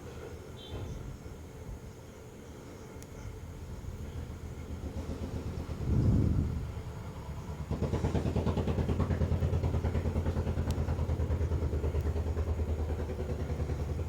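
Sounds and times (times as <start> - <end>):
engine running with fast pulse: 4.7 - 14.0.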